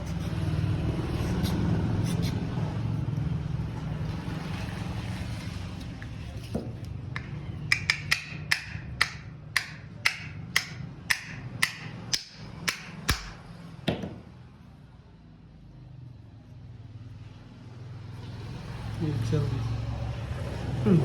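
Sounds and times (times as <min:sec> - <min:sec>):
sharp ringing taps: 0:07.2 - 0:13.4.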